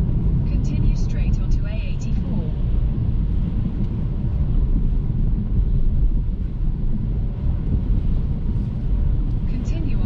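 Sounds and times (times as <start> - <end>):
car interior engine and road noise: 0.0 - 10.0.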